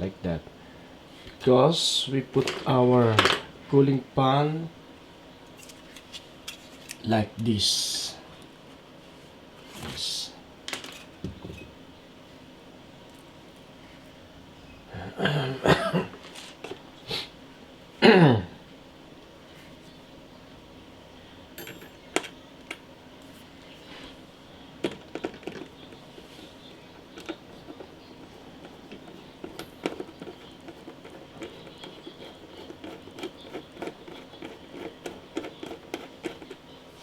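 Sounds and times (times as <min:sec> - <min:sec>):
faint steady hum: 0:00.0 - 0:37.0
computer parts clicking and tapping: 0:24.8 - 0:26.1, 0:27.0 - 0:36.6.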